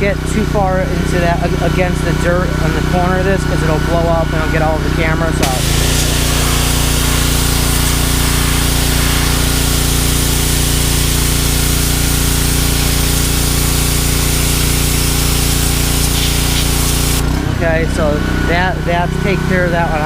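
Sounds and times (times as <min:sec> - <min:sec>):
pressure washer motor humming: 0:00.0 - 0:20.0
water jet hissing: 0:05.4 - 0:17.3.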